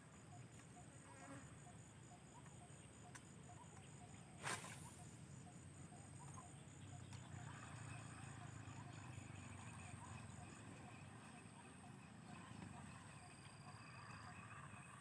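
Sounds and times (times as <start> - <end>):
faint ticks: 2.3 - 4.2, 6.2 - 8.0.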